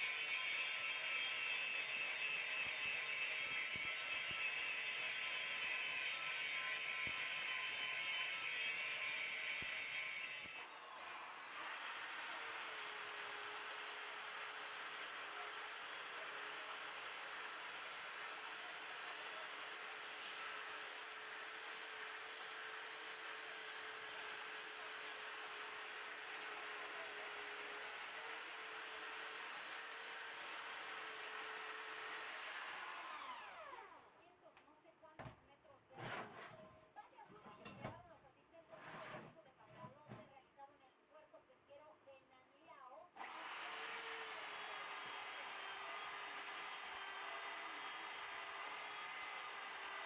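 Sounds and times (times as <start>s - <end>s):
power tool motor whining: 9.6s - 34.0s, 43.2s - 50.0s.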